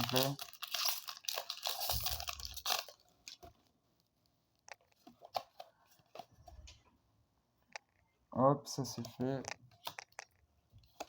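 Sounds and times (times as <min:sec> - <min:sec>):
trading cards clicking and crinkling: 0:00.0 - 0:03.5, 0:09.0 - 0:11.0.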